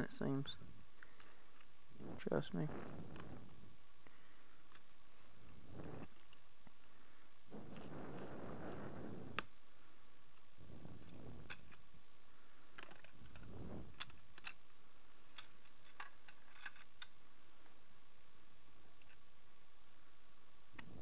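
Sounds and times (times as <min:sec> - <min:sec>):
rustling: 0:00.5 - 0:17.7
plastic parts clicking: 0:11.4 - 0:11.9, 0:12.7 - 0:17.2.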